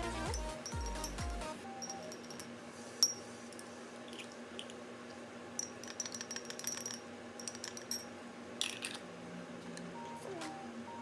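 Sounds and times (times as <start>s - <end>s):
spoon clinking against cup: 0.3s - 4.7s, 5.6s - 9.0s.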